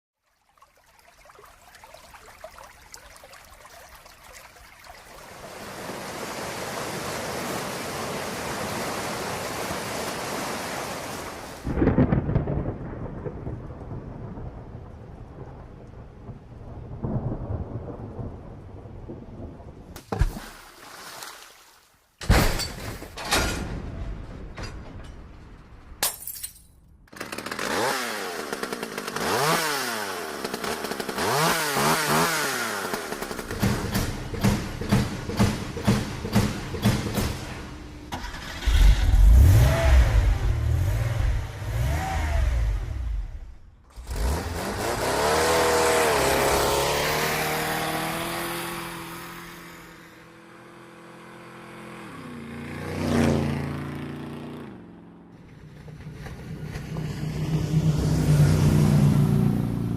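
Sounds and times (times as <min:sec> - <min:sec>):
engines revving: 0:27.4 - 0:54.7, 0:55.8 - 0:59.9
vehicle passing by: 0:38.4 - 0:54.8, 0:55.4 - 0:59.9.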